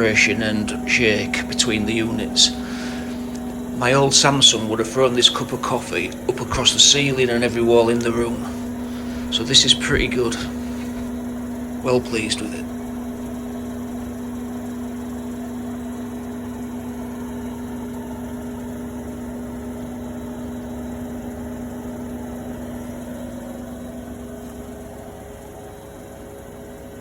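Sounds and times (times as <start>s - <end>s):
washing machine spinning: 0.0s - 27.0s.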